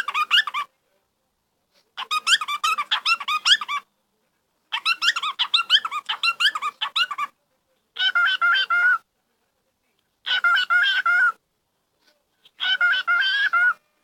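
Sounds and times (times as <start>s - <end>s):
bird squeaky chattering calls: 2.0s - 3.9s, 4.8s - 7.3s, 12.6s - 13.8s.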